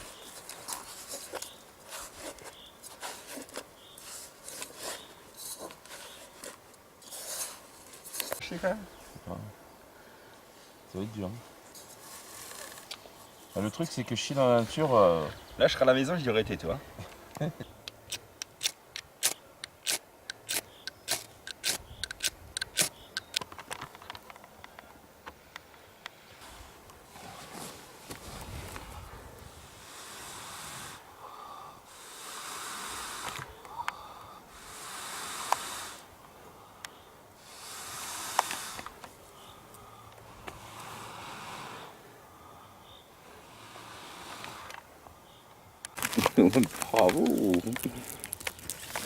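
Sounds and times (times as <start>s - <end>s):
camping gear rustling and scraping: 0.0s - 9.3s, 10.4s - 15.5s, 18.5s - 29.5s, 38.0s - 41.9s, 45.9s - 49.0s
sharp clicks and light knocks: 17.0s - 25.8s.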